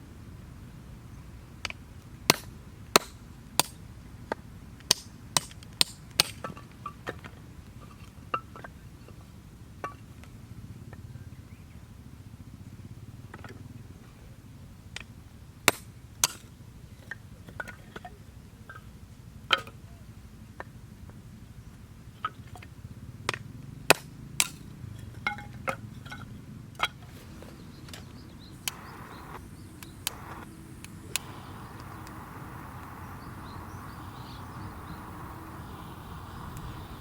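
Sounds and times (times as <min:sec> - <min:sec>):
steady low rumble: 0:28.6 - 0:37.0.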